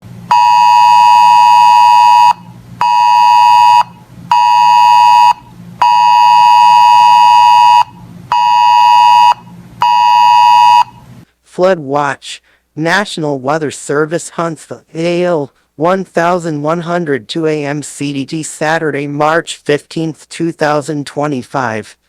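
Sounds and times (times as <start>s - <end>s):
alert buzzer beeping: 0.3s - 11.0s.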